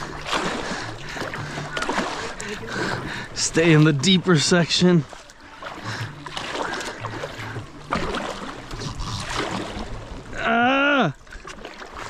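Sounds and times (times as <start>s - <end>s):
paddle splashing water: 0.0s - 12.0s.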